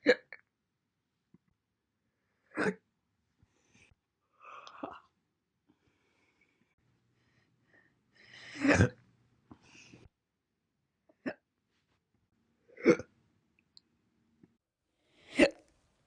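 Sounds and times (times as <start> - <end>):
soft breath: 3.4 - 4.7, 5.7 - 8.6, 9.5 - 10.1.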